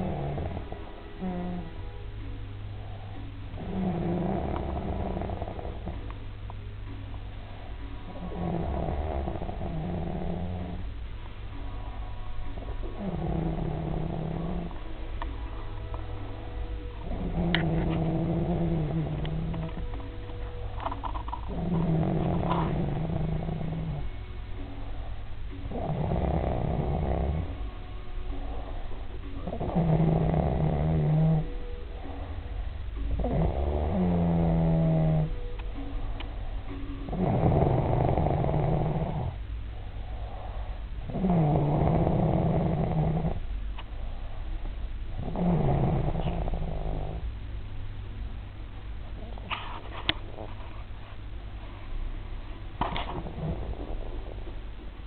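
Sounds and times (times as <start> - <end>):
man snoring: 0.0 - 1.7, 3.6 - 6.0, 8.2 - 10.8, 13.0 - 14.8, 17.1 - 19.8, 21.5 - 24.0, 25.7 - 27.6, 29.4 - 31.5, 33.1 - 35.3, 37.1 - 39.4, 41.1 - 43.4, 45.2 - 47.2
quiet breath: 0.0 - 3.6, 6.9 - 8.4, 9.2 - 25.9, 27.1 - 29.8, 30.5 - 33.8, 38.1 - 41.8, 42.8 - 45.1, 49.0 - 55.0.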